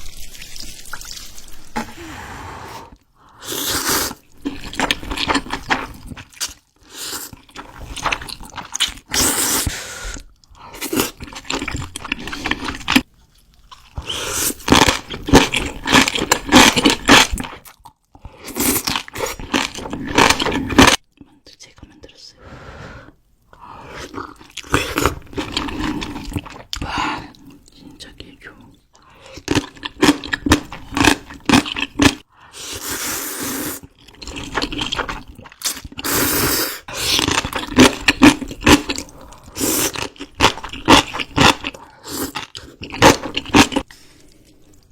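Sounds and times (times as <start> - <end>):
person chewing and crunching food: 3.2 - 21.2, 23.8 - 28.0, 29.0 - 44.9.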